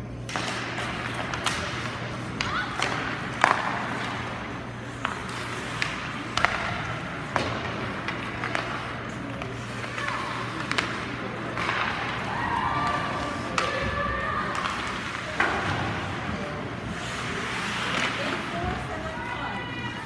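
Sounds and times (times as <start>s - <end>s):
steady low hum: 0.0s - 20.0s
crowd haze: 0.3s - 20.0s
faint shouts: 12.2s - 14.8s.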